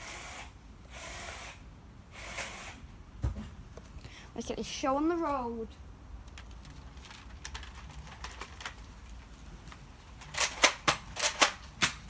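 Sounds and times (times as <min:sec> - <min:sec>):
plastic toy blaster clicks: 0:10.2 - 0:12.0.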